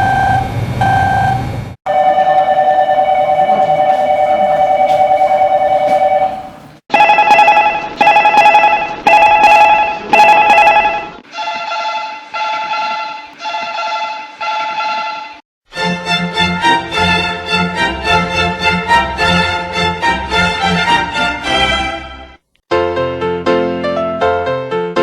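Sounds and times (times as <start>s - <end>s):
electronic bell-like dings: 1.9s - 11.1s.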